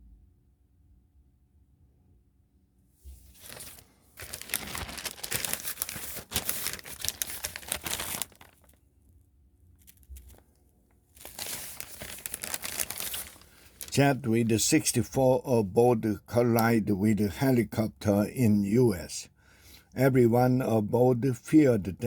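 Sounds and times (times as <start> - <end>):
crinkling handling noise: 3.0 - 8.8, 9.7 - 15.0.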